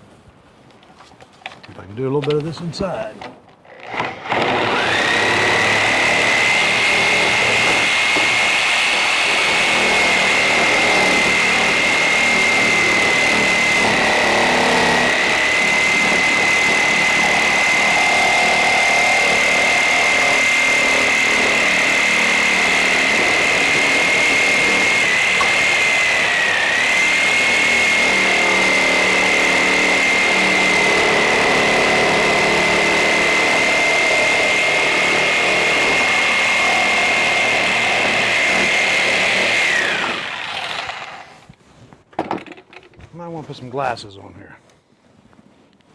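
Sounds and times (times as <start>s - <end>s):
electric saw whining: 2.4s - 41.5s.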